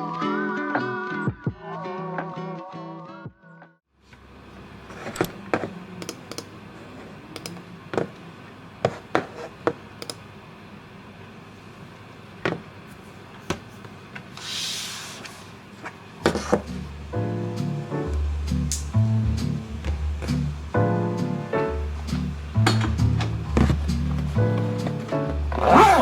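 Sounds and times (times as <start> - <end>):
short hissing rustle: 14.4 - 15.5.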